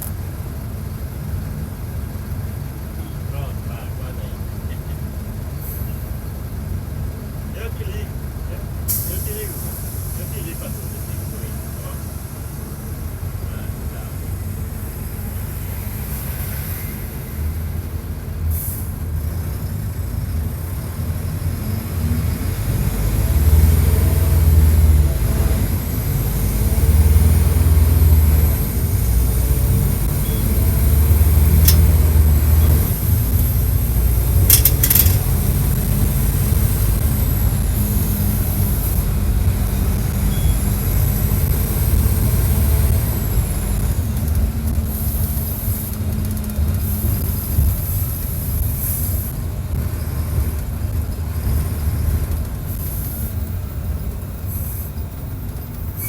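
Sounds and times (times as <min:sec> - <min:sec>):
bus diesel engine revving: 0:00.0 - 0:56.0
sharp clicks: 0:31.6 - 0:32.1, 0:34.5 - 0:35.3.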